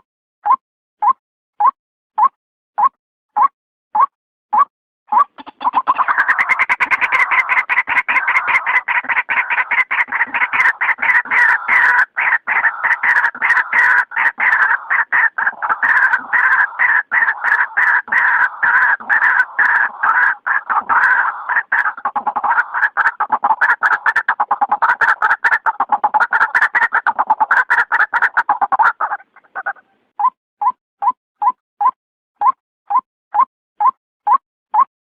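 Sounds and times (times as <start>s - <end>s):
waterhen calling: 5.1s - 30.0s.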